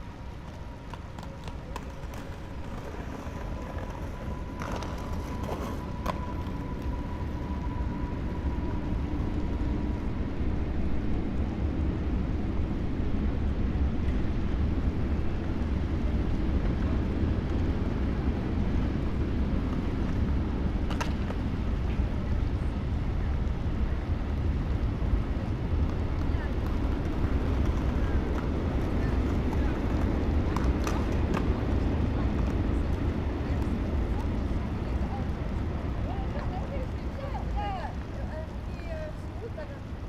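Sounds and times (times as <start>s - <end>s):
skateboard wheels rolling on concrete: 0.0s - 40.0s
skateboard clack: 0.4s - 6.9s, 20.9s - 21.4s, 25.7s - 35.4s.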